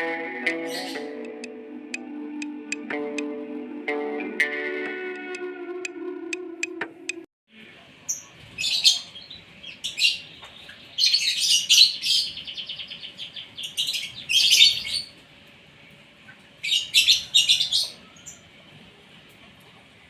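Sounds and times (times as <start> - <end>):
starling singing: 0.0 - 3.3.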